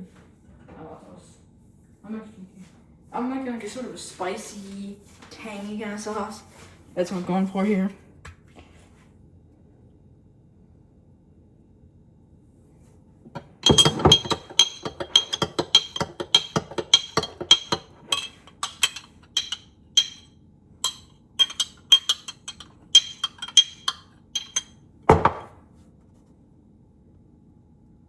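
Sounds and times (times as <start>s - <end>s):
metal spoon clinking against dish: 13.4s - 25.4s.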